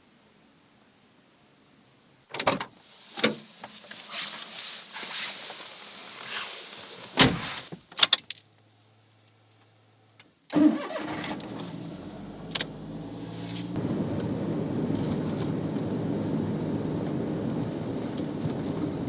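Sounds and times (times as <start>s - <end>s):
car engine starting: 10.5s - 19.0s
car door shutting: 10.6s - 19.0s.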